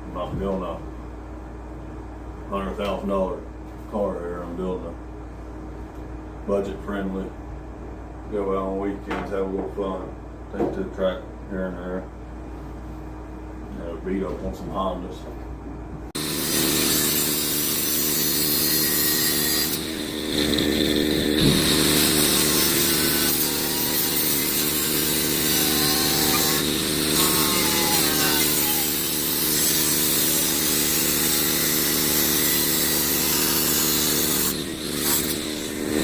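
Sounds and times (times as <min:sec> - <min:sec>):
power tool cutting sheet metal: 0:16.2 - 0:36.0.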